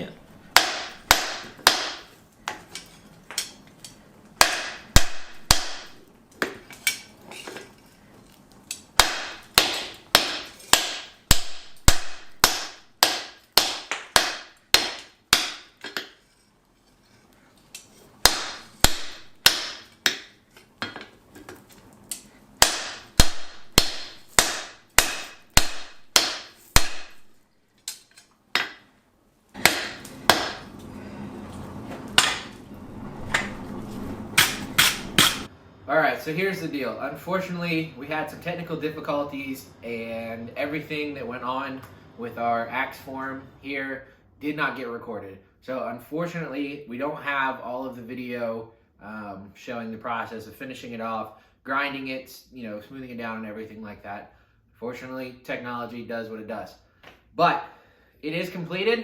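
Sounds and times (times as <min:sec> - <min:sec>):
hammer striking steel on anvil: 0:22.1 - 0:27.3, 0:29.6 - 0:30.7, 0:32.2 - 0:32.5, 0:34.4 - 0:35.5.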